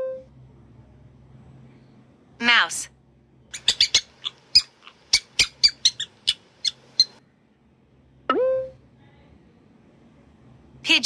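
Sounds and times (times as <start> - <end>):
mouse squeaking: 3.5 - 7.2.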